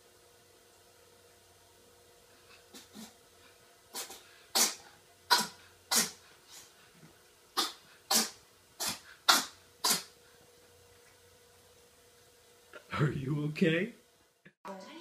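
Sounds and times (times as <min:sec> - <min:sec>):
cat sneezing: 0:03.9 - 0:06.7, 0:07.6 - 0:10.2.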